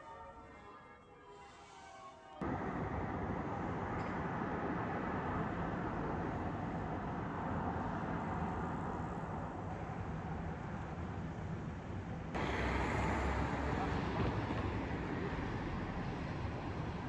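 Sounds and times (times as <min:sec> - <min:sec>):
road traffic rumble and hiss: 0:02.4 - 0:17.0.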